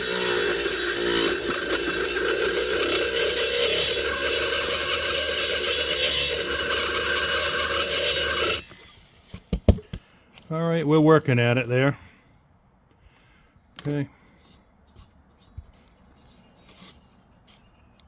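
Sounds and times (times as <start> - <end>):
rotary grinder grinding metal: 0.0 - 9.2.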